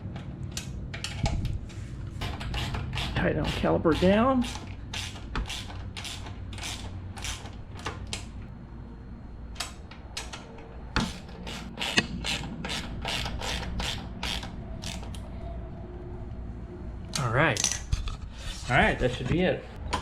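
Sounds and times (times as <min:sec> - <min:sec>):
socket ratchet clicking: 0:04.4 - 0:08.3, 0:11.1 - 0:15.2.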